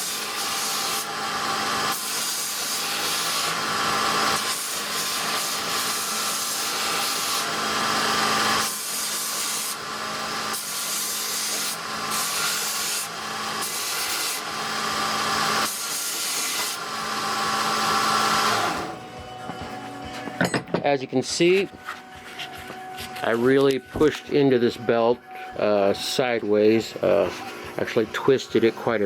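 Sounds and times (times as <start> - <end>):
belt grinder running: 0.0 - 20.6.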